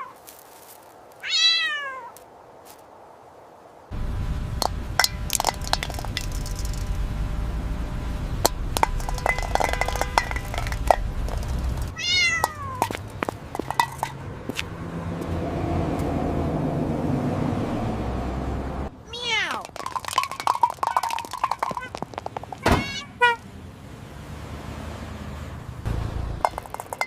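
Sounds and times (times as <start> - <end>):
cat meowing: 1.2 - 2.2, 12.0 - 12.8, 19.0 - 19.7, 22.7 - 23.4
steady low rumble: 3.9 - 15.4
sharp clicks and clinks: 4.6 - 7.0, 8.4 - 14.2, 19.5 - 23.0, 26.4 - 27.0.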